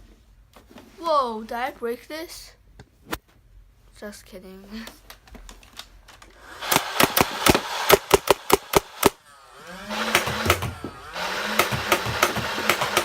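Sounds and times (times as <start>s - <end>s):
flywheel motor whir: 6.3s - 13.0s
toy blaster shots: 6.6s - 13.0s.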